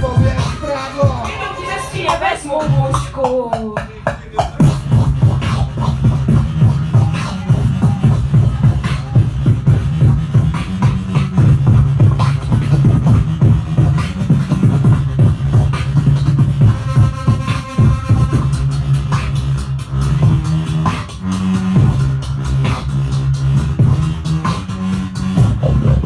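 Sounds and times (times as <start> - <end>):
held low bass tone: 0.0 - 1.3, 4.6 - 26.0
falling vocal sweep: 0.0 - 3.3
beatboxed kick and snare: 0.0 - 26.0.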